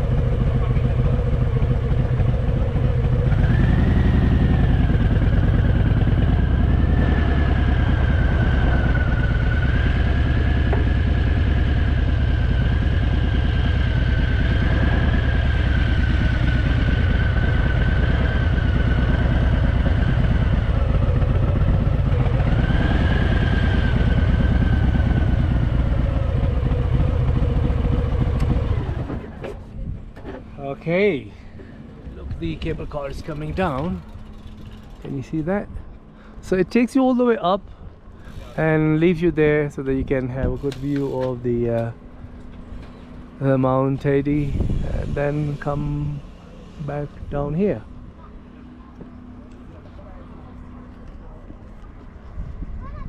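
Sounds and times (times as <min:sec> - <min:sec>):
motorcycle engine running: 0:00.0 - 0:29.8, 0:31.7 - 0:35.4.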